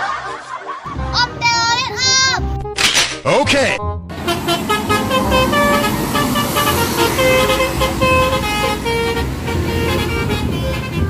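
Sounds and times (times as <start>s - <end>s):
bus musical horn playing: 4.1s - 11.0s
low engine rumble: 4.1s - 11.0s.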